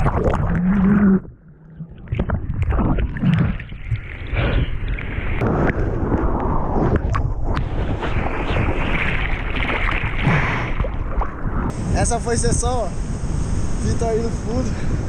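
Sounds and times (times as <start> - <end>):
water splashing in surf: 1.9 - 11.8
wind buffeting microphone: 4.5 - 15.0.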